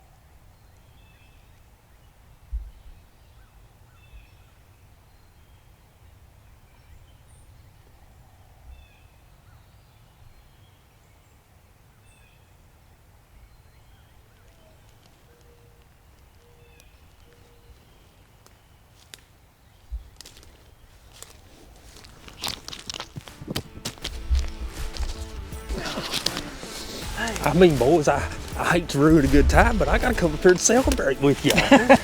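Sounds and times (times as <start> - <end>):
low wind rumble: 24.0 - 32.0.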